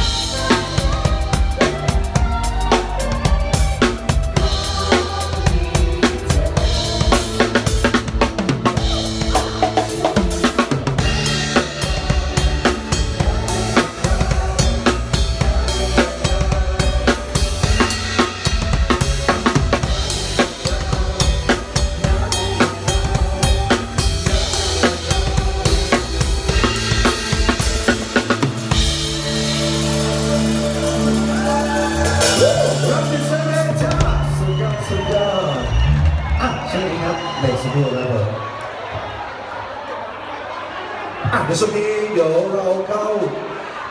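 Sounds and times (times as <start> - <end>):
drum kit beat: 0.0 - 35.4
pop backing track: 0.0 - 37.8.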